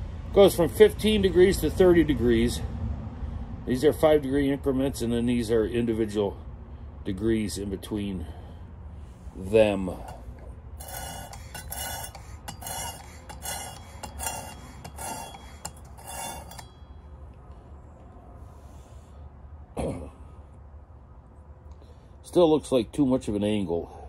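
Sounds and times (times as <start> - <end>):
stone rasping along knife edge: 9.9 - 16.9.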